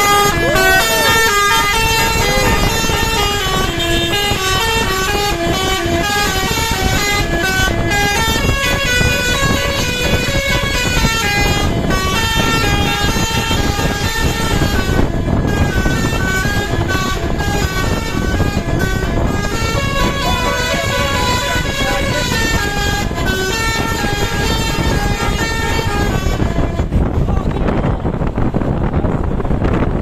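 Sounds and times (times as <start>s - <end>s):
bus horn playing a tune: 0.0s - 28.2s.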